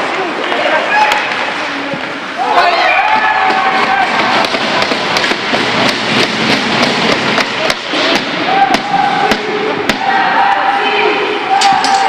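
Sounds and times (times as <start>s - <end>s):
steady noisy haze: 0.0s - 12.0s
hockey sticks and puck knocking: 3.1s - 10.6s.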